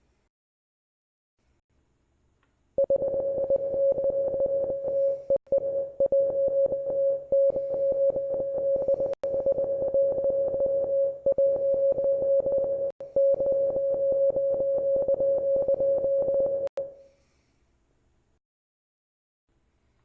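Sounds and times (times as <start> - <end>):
morse code beeping: 2.8 - 16.7.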